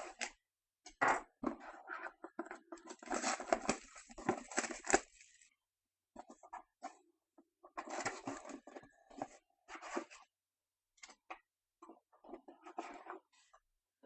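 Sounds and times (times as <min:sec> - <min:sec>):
packaging and cards rustling: 0:02.8 - 0:05.5.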